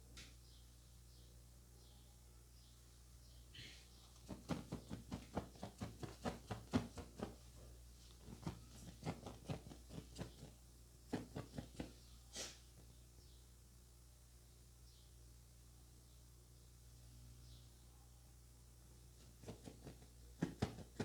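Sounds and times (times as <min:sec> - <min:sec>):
hands striking head in massage: 0:19.4 - 0:21.0.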